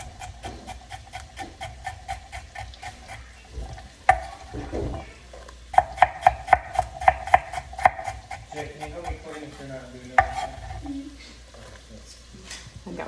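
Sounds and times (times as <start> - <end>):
knife chopping on cutting board: 0.0 - 5.0, 5.8 - 10.9.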